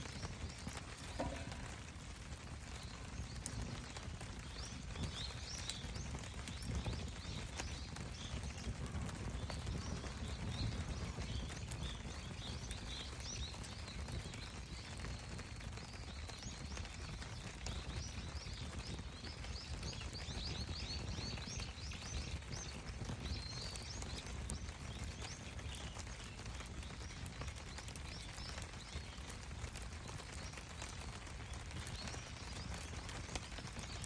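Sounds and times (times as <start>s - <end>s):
bird chirping: 0.0s - 1.8s
campfire crackling: 0.0s - 34.0s.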